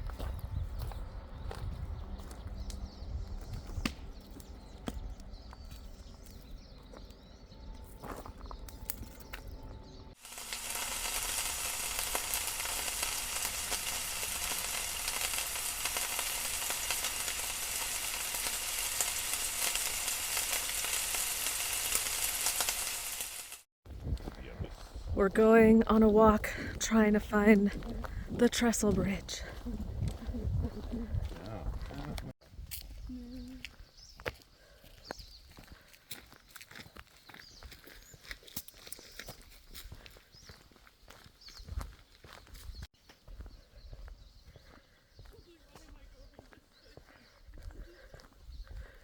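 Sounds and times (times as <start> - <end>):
food sizzling in a frying pan: 10.2 - 23.7.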